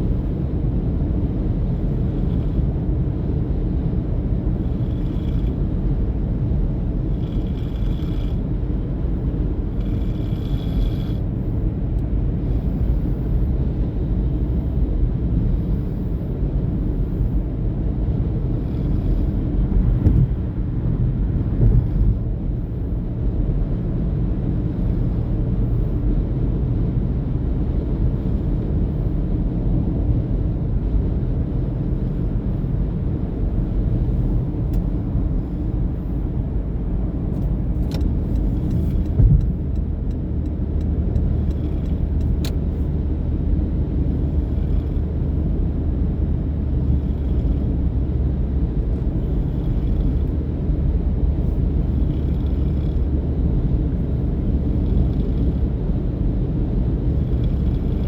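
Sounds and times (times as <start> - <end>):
vehicle rumble in motion: 0.0 - 58.0
brief thump: 39.2 - 39.5.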